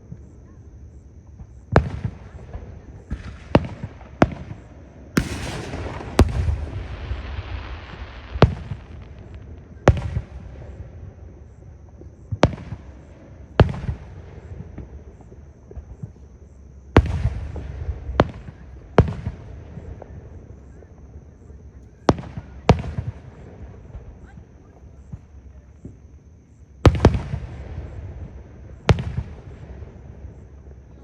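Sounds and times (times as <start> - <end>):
firework bangs: 1.7 - 11.0
firework crackling: 5.2 - 10.8.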